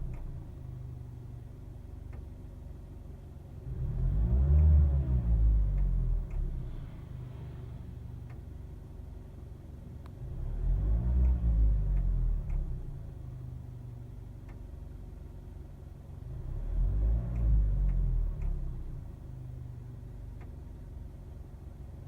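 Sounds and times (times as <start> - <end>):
car engine idling and revving: 0.0 - 22.0
faint sharp ticks: 4.3 - 6.6, 11.2 - 13.6, 16.8 - 20.6.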